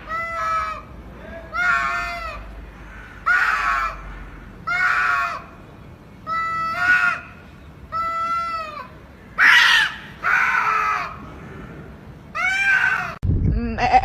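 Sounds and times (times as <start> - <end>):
animal calling: 6.3 - 13.2.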